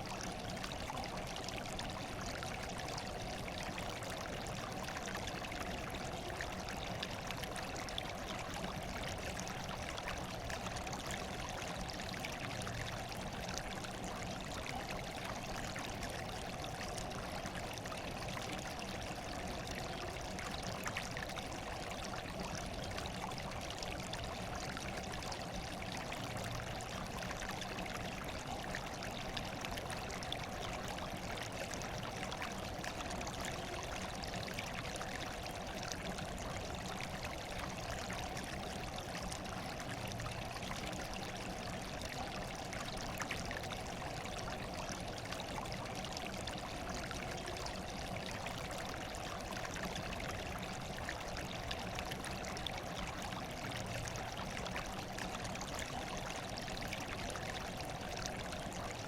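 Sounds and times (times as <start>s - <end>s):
water trickling: 0.0s - 59.0s.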